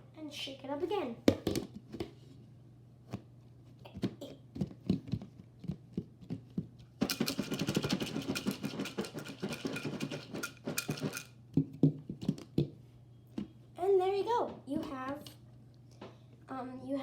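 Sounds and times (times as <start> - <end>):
popcorn rattling in a bowl: 7.0 - 11.4.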